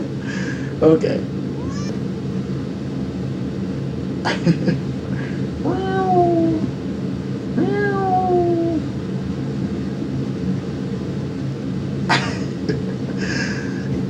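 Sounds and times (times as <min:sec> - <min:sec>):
steady low hum: 0:00.0 - 0:14.0
cat meowing: 0:01.6 - 0:02.0, 0:05.6 - 0:06.7, 0:07.6 - 0:08.9.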